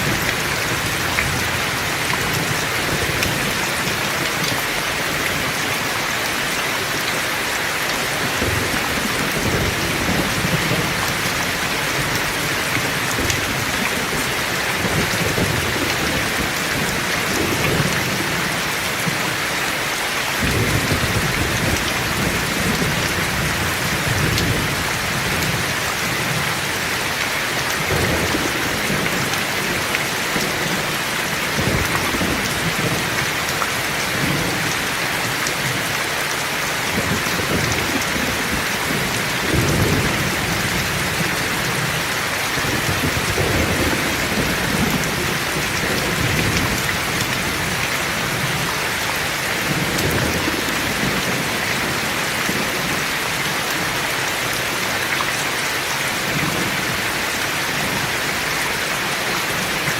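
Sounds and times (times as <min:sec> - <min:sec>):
heavy rain: 0:00.0 - 0:59.9
thunder rumbling: 0:20.4 - 0:26.9, 0:36.9 - 0:48.7.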